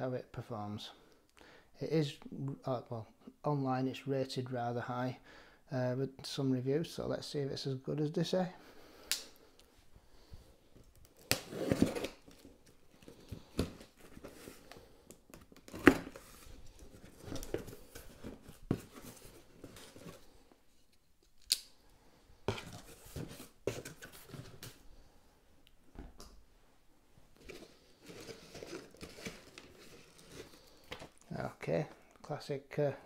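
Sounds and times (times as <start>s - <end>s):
cardboard packaging rustling: 10.9s - 21.4s, 22.4s - 24.8s, 27.3s - 31.4s.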